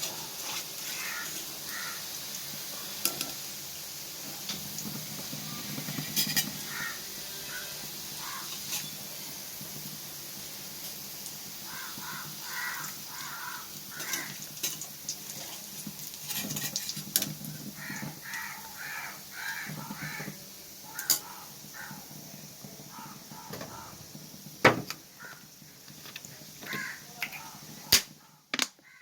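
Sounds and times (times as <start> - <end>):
crow cawing: 0.9 - 2.1, 6.6 - 8.6, 11.7 - 14.5, 17.8 - 22.1, 22.9 - 24.0, 25.2 - 25.5, 26.6 - 27.6, 28.2 - 29.0.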